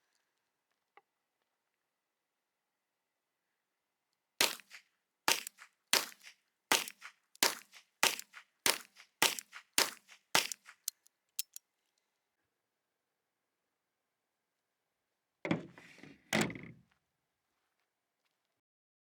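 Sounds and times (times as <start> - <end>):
sharp clicks: 4.4 - 4.7, 5.3 - 11.6.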